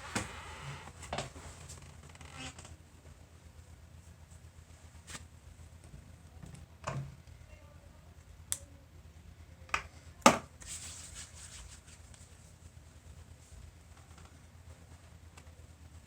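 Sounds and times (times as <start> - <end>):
faint low hum: 0.0 - 16.0
soft rustle: 10.6 - 15.2.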